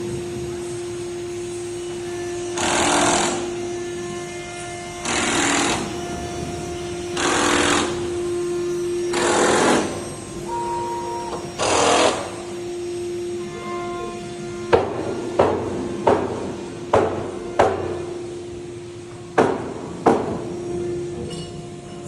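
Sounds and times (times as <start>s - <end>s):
router spindle whine: 0.0s - 15.4s
noisy cutting bursts: 0.0s - 18.8s.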